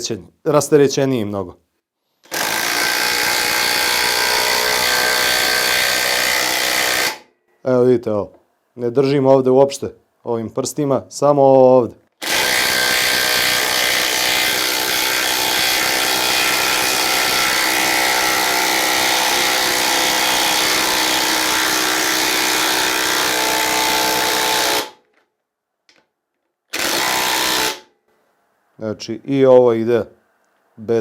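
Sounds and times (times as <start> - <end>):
impact driver driving screw into wood: 2.2 - 7.3, 12.2 - 25.1, 26.7 - 27.9.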